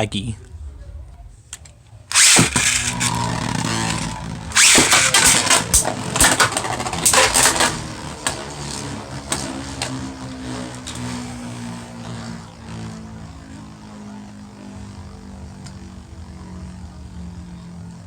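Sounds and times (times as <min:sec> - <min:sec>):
spinning tops clashing: 0:02.1 - 0:07.9
spinning tops whirring: 0:02.1 - 0:17.8.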